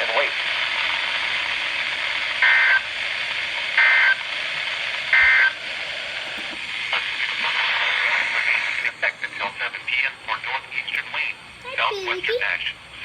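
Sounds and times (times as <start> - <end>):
steady hiss: 0.0 - 13.0
two-tone data bursts: 5.1 - 5.6.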